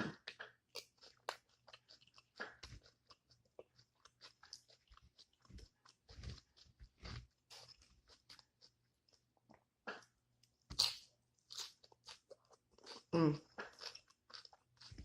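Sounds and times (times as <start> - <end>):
person chewing crunchy food: 0.0 - 15.0.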